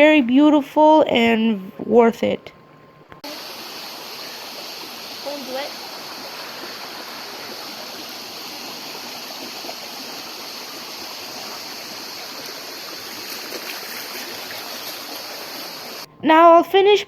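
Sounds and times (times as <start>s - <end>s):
flowing water rushing: 3.2s - 16.1s.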